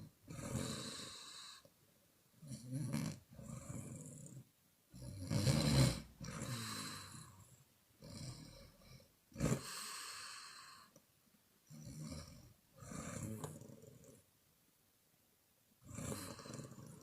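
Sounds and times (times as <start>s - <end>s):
woman snoring: 0.3s - 1.7s, 2.4s - 4.4s, 5.0s - 11.0s, 11.7s - 14.2s, 15.8s - 17.0s.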